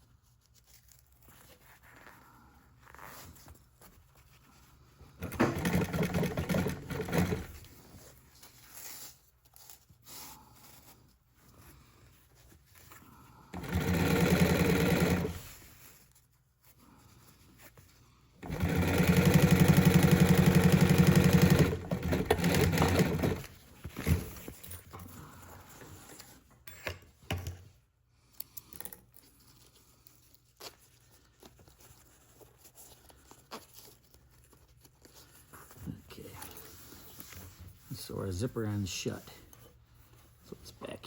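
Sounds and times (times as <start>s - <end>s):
sewing machine stitching: 5.2s - 7.7s, 13.5s - 15.5s, 18.4s - 24.3s
faint clicks and handling noises: 23.6s - 37.9s.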